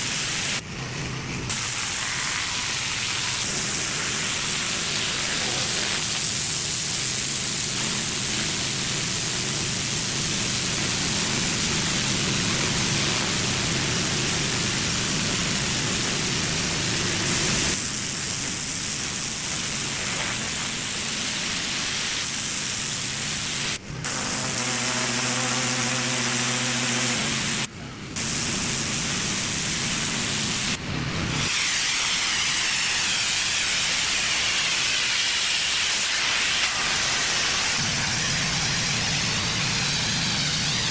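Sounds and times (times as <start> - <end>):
high-pressure water spray hiss: 0.0 - 0.6, 1.5 - 40.9
pressure washer engine hum: 3.6 - 30.8.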